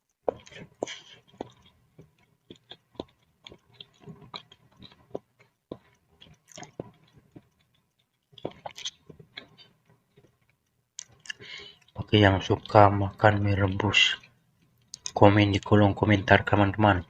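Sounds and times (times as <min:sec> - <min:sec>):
wet chewing mouth sounds: 0:00.1 - 0:15.2.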